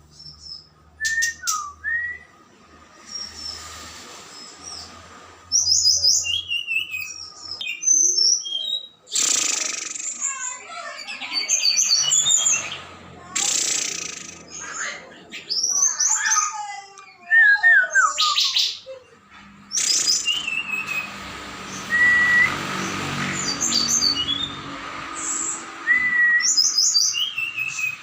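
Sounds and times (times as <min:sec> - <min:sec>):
birds warbling song: 0:00.0 - 0:28.0
sharp high bird chirps: 0:05.6 - 0:12.8, 0:13.4 - 0:16.6, 0:19.7 - 0:28.0.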